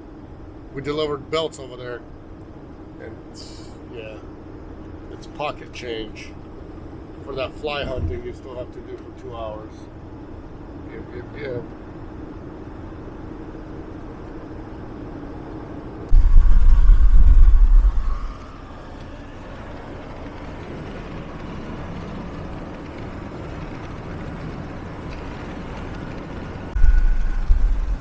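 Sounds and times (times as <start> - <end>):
road and engine noise in cabin: 0.0 - 28.0
loud low rumble: 7.6 - 8.6, 16.1 - 18.7, 26.7 - 28.0.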